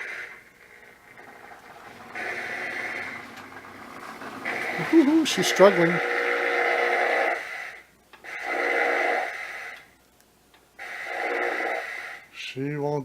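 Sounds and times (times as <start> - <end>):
hissing steam chuffs: 0.0 - 9.8.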